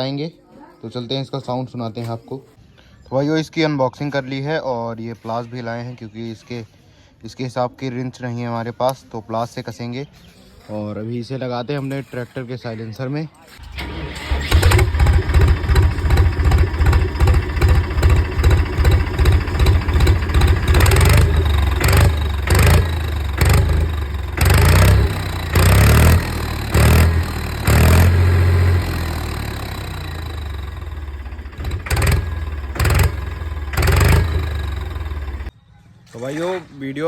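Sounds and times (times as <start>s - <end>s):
diesel tractor engine revving: 13.6s - 35.5s.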